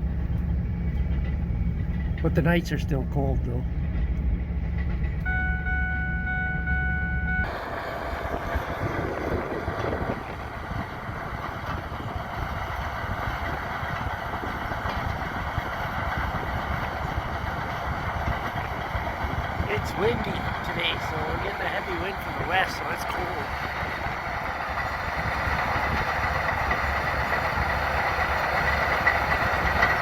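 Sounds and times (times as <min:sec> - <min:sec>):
diesel engine running: 0:00.0 - 0:30.0
steady high tone: 0:05.2 - 0:07.7
wind rush: 0:08.1 - 0:20.7.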